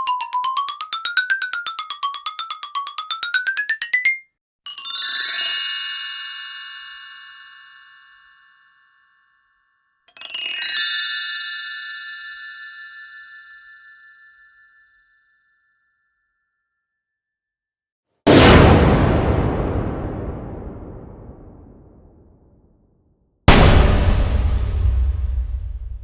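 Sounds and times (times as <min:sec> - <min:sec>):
shimmering bell-like chimes: 0:04.8 - 0:17.0.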